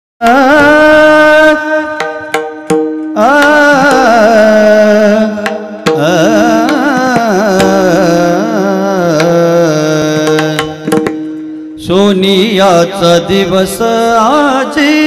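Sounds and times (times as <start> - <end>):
person singing wordless high notes: 0.2 - 15.0
sharp percussion strikes: 1.8 - 13.8.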